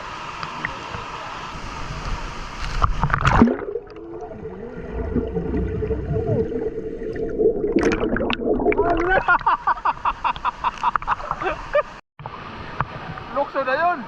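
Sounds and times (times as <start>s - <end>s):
rushing water: 0.0s - 14.0s
loud splash: 3.0s - 9.3s.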